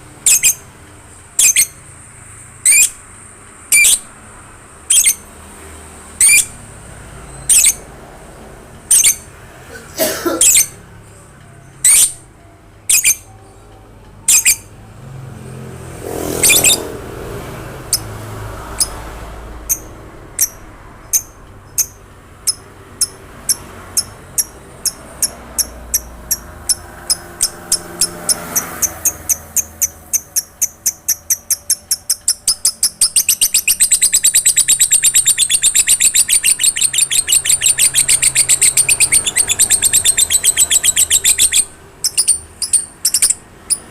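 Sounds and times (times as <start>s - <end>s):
lovebird chirping and trilling: 0.2s - 0.7s, 1.4s - 1.9s, 2.6s - 3.0s, 3.7s - 4.1s, 4.8s - 5.3s, 6.1s - 6.6s, 7.2s - 7.9s, 8.9s - 9.3s, 10.4s - 10.8s, 11.8s - 12.3s, 12.9s - 13.6s, 14.3s - 14.7s, 16.0s - 17.0s, 17.8s - 43.9s.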